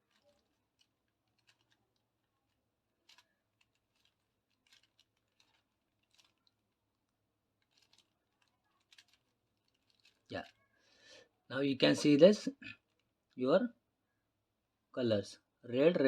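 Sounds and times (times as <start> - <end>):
puzzle cube plastic clicks: 0.0 - 6.7, 7.6 - 10.6.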